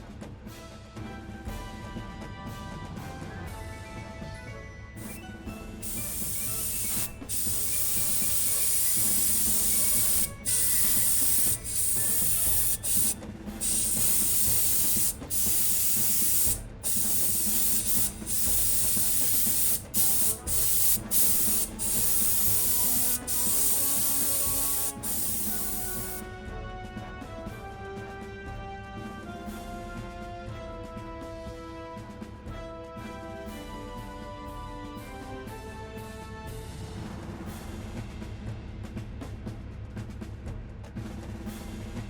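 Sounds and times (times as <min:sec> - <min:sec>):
spray paint hissing: 0:05.0 - 0:05.2, 0:05.8 - 0:26.2.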